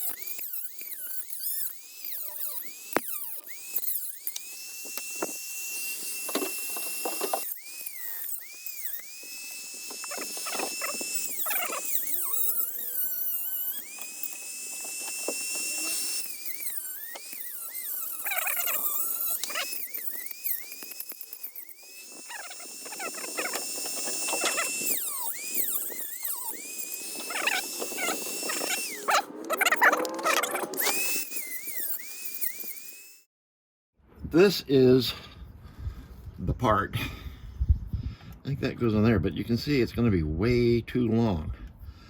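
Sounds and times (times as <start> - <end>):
cutoff wheel scraping plastic: 0.0 - 32.7
rotary tool whining: 0.0 - 33.3.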